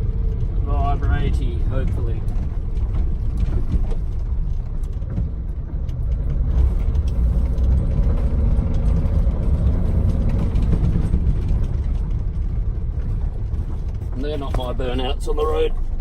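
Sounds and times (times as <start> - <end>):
car engine running while driving: 0.0 - 16.0.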